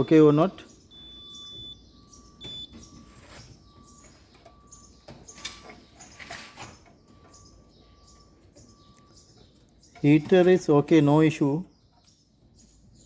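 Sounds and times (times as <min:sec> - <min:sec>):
high chirps: 0:00.0 - 0:10.2
multimeter beep: 0:00.0 - 0:10.2.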